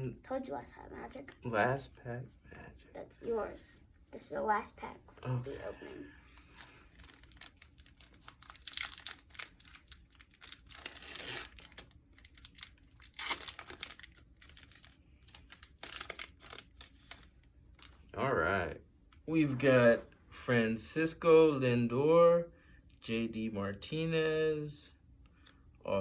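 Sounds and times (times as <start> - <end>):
cards rustling and clicking: 6.4 - 18.1
foil card pack tearing: 6.6 - 17.9.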